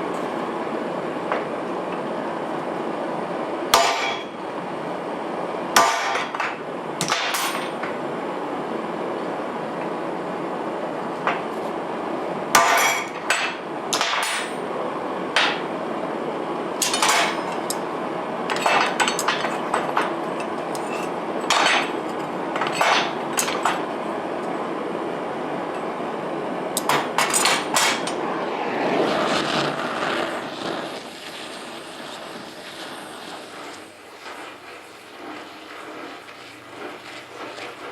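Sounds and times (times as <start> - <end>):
hammer striking steel: 3.8 - 4.3, 5.8 - 7.8, 12.6 - 14.6, 16.8 - 17.6, 20.8 - 22.0
steady rushing noise: 25.0 - 37.9.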